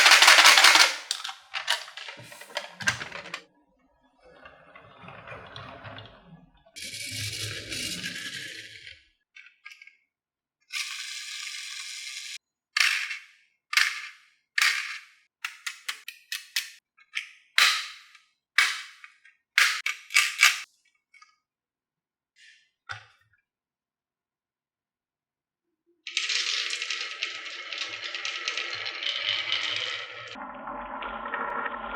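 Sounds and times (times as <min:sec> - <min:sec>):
marble rolling on wooden track: 0:00.0 - 0:03.4, 0:04.4 - 0:09.0, 0:26.1 - 0:31.9
marbles clacking on wood: 0:00.0 - 0:03.4.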